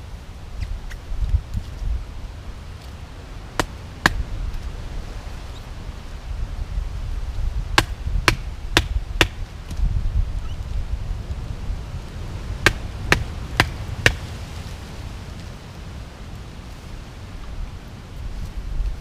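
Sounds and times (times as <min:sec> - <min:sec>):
low wind rumble: 0:00.0 - 0:19.0
knife chopping: 0:12.6 - 0:14.2.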